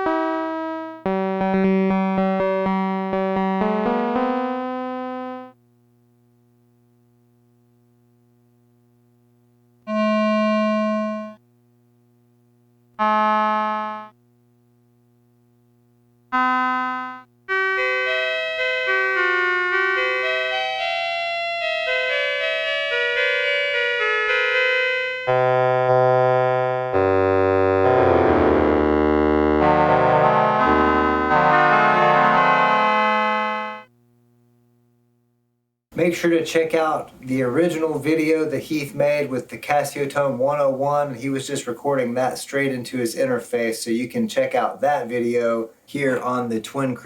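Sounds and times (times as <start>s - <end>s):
electronic keyboard playing: 0.0s - 5.6s, 9.9s - 11.4s, 13.0s - 14.2s, 16.3s - 33.9s.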